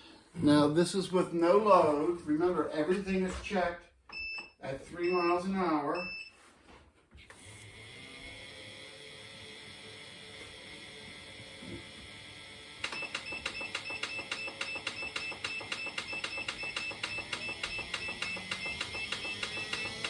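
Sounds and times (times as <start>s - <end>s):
treadmill motor whine: 7.3s - 20.0s
treadmill belt ticking: 12.8s - 20.0s.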